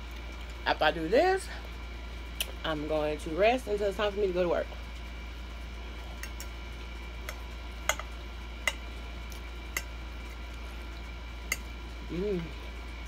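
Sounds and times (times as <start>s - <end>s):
utensil clinking against a dish: 6.2s - 6.5s, 7.2s - 8.8s, 11.5s - 11.7s.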